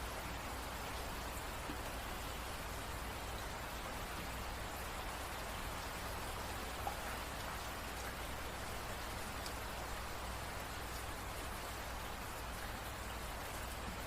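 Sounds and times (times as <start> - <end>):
steady rain patter: 0.0 - 14.0.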